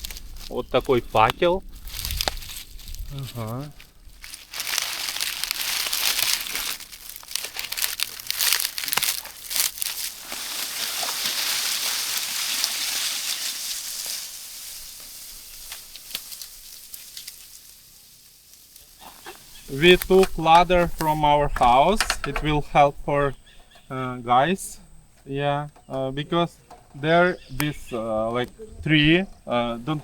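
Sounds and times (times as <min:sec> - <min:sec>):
dry palm leaves rustling: 0:00.0 - 0:22.0.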